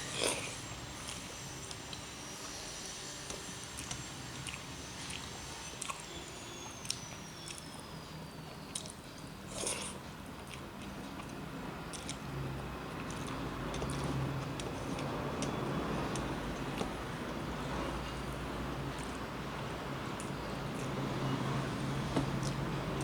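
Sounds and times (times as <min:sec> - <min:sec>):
person chewing food: 0:03.8 - 0:06.1, 0:08.5 - 0:12.3, 0:12.9 - 0:18.3.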